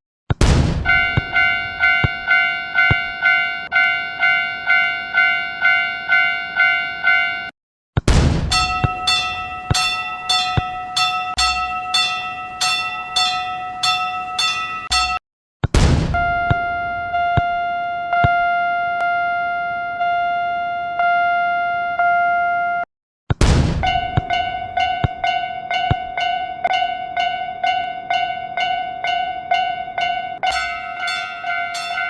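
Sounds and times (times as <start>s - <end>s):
railroad crossing bell dinging: 0.9s - 7.5s, 8.5s - 15.2s, 23.8s - 32.0s.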